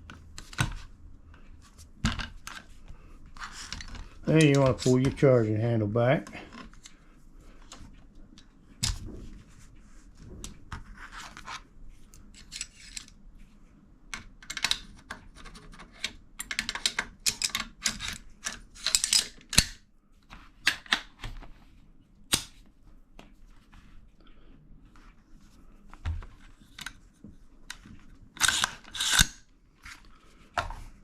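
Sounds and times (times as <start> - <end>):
metal parts sliding scrapes: 28.4 - 29.4.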